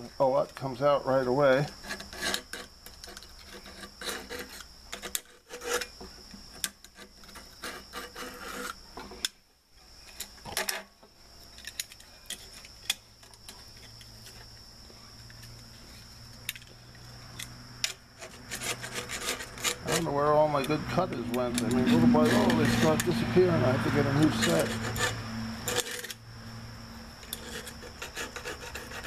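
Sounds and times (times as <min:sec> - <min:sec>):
blade scraping gasket from metal: 0:01.8 - 0:06.0, 0:06.9 - 0:08.8, 0:17.8 - 0:26.2, 0:27.3 - 0:29.0.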